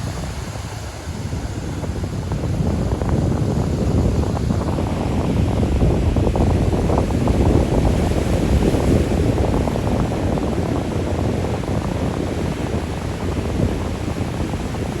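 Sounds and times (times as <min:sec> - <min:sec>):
ocean waves: 0:00.0 - 0:02.6
wind buffeting microphone: 0:00.0 - 0:15.0.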